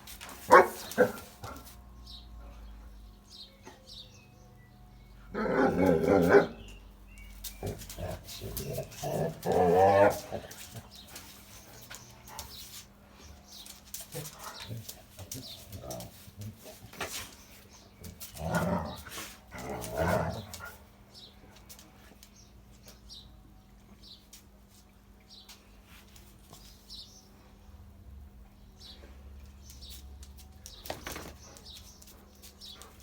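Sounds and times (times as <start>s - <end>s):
big dog woofing: 7.5s - 11.2s.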